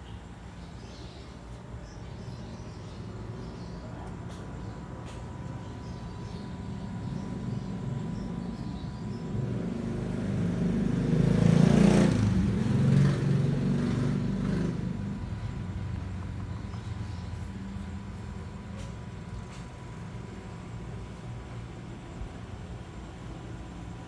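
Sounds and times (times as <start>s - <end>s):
vehicle passing by: 9.2s - 16.5s.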